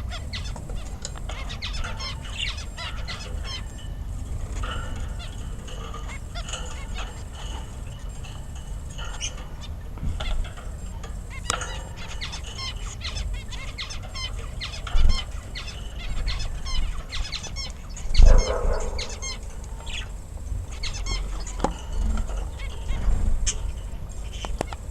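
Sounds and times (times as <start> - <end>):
birds chirping: 0.0 - 24.9
low steady rumble: 0.0 - 24.9.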